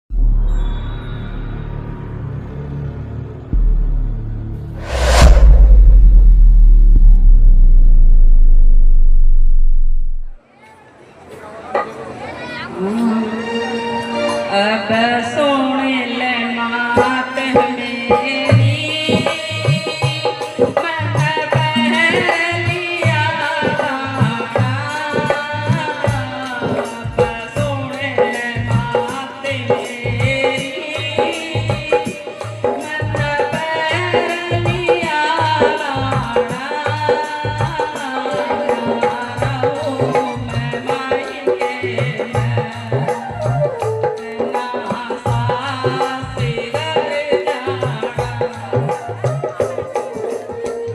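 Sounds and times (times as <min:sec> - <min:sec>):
tabla beating: 0:16.0 - 0:50.9.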